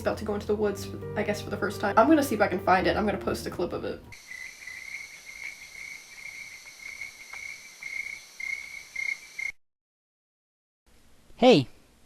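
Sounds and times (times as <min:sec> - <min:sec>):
crickets chirping: 0:04.1 - 0:09.6.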